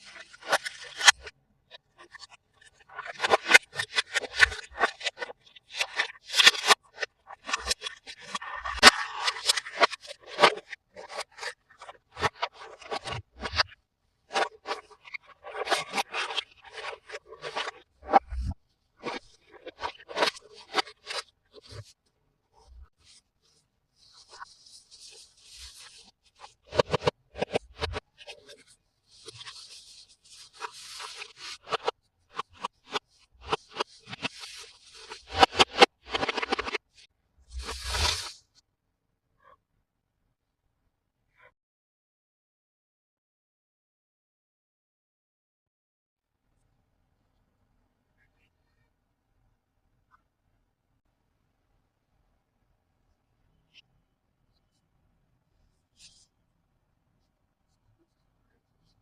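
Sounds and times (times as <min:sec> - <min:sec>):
toy packaging handling: 0:29.2 - 0:31.8, 0:37.6 - 0:38.4.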